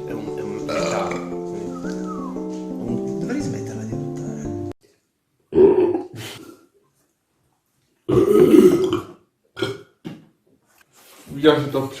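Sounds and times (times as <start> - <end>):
man burping: 0.7 - 1.3, 5.5 - 6.6, 8.1 - 10.0.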